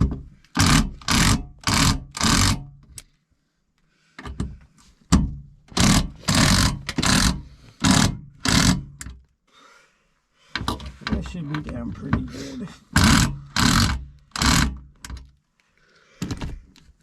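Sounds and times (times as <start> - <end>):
power driver driving screws: 0.5 - 3.0, 5.7 - 9.2, 12.9 - 15.3.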